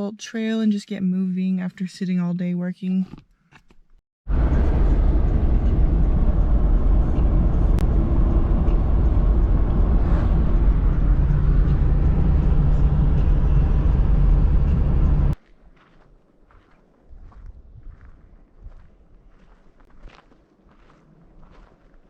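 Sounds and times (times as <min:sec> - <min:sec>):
vehicle road and engine rumble: 0:04.3 - 0:15.4.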